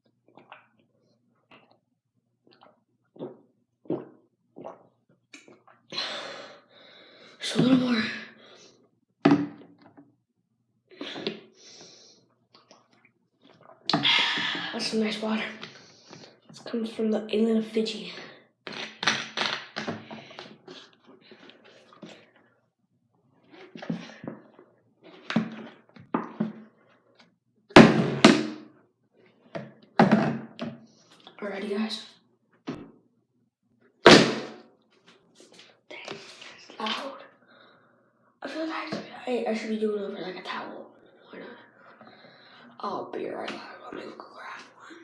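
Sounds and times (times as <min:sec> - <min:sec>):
plastic bottle thunk: 0:09.2 - 0:09.6, 0:27.8 - 0:28.7, 0:30.0 - 0:30.8, 0:34.1 - 0:34.6.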